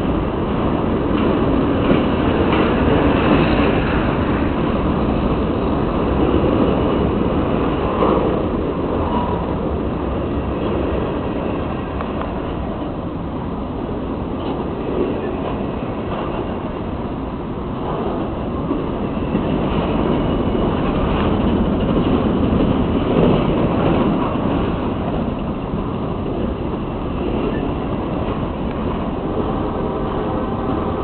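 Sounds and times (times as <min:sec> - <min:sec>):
train wheels rumbling on rails: 0:00.0 - 0:31.0.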